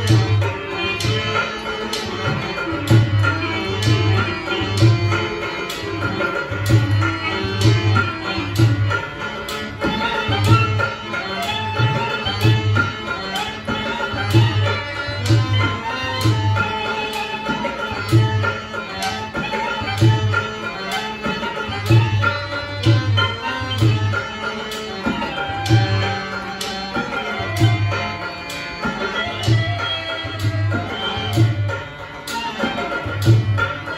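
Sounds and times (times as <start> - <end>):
tabla drumming: 0.0 - 33.9.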